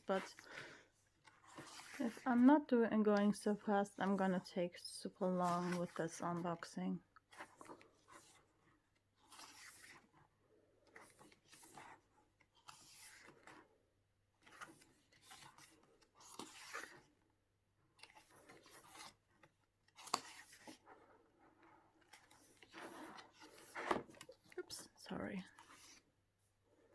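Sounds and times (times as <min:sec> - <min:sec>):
photobook pages turning: 0:00.2 - 0:02.6, 0:05.2 - 0:13.7, 0:14.4 - 0:17.2, 0:17.9 - 0:21.0, 0:21.9 - 0:26.2.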